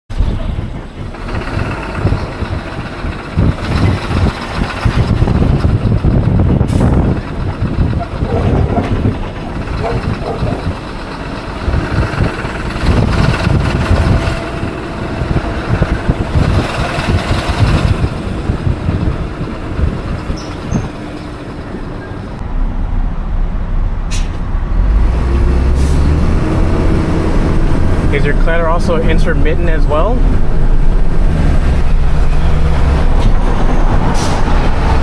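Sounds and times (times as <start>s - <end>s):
diesel truck engine knocking: 0.1s - 22.4s.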